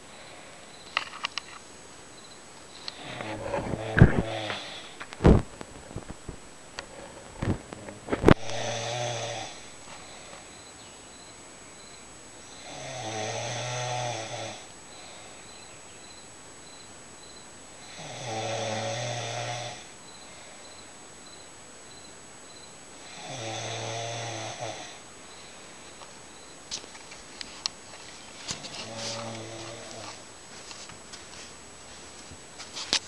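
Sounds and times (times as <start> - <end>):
woman snoring: 2.9 - 5.0, 8.3 - 10.5, 12.5 - 15.4, 17.8 - 20.7, 23.0 - 25.0, 28.6 - 30.2.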